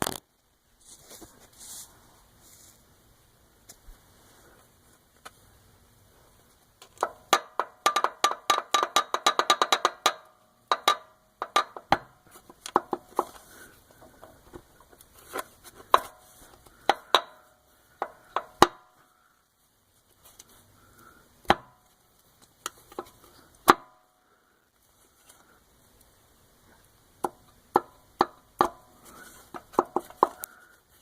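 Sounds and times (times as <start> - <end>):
metal clacking of worn connecting rod: 6.8 - 13.3.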